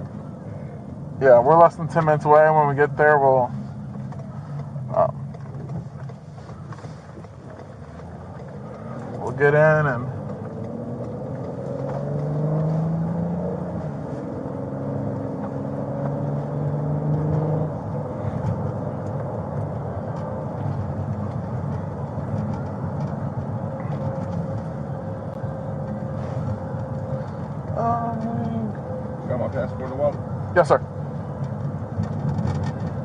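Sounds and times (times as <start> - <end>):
car engine accelerating: 0.0 - 33.0
road rumble: 0.0 - 33.0.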